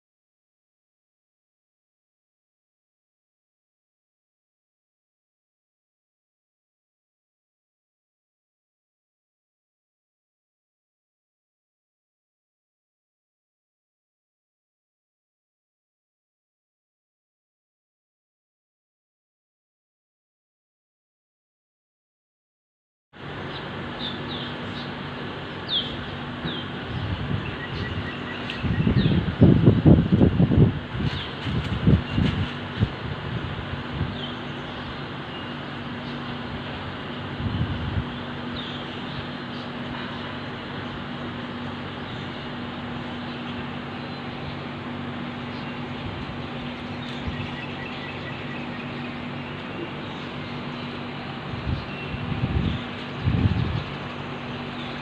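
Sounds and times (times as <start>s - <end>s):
constant low hum: 23.2s - 55.0s
small birds chirping: 23.4s - 30.3s, 31.0s - 33.0s, 34.0s - 55.0s.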